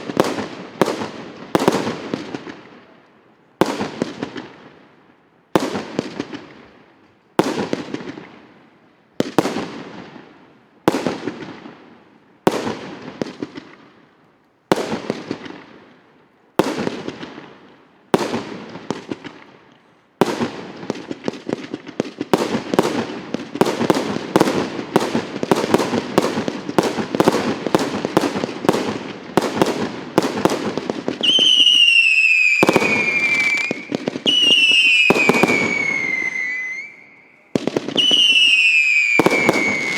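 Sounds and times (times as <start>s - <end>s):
fireworks shots bursting: 0.0s - 2.7s, 7.4s - 8.3s, 12.5s - 13.9s, 14.7s - 15.8s, 16.6s - 19.5s, 20.2s - 39.9s
fireworks crackling: 0.0s - 4.8s, 9.2s - 39.9s
falling firework whistles: 31.2s - 39.9s.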